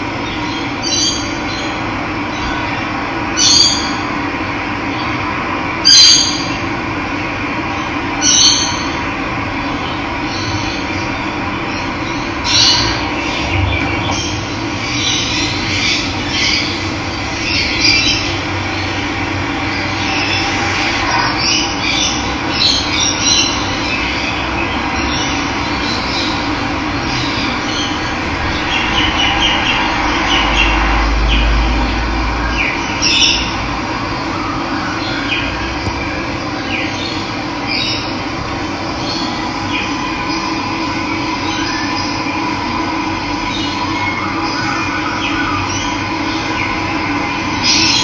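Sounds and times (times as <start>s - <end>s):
birds chirping: 0.0s - 4.0s, 34.2s - 42.4s
low rumble: 12.8s - 16.2s, 26.4s - 34.2s, 35.8s - 42.2s.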